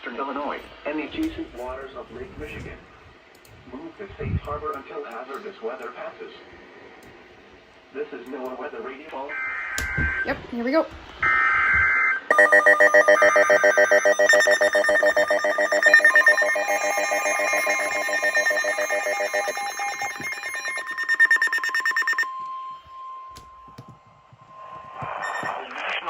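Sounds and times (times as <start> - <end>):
rapidly pulsing electronic alarm: 11.2 - 22.3, 25.2 - 25.6
steady warning tone: 12.3 - 23.7, 25.2 - 25.6.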